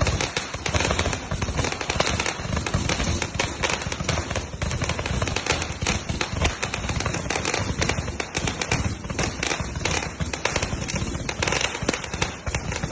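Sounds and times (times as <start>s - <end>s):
firework bangs and crackles: 0.0s - 12.9s.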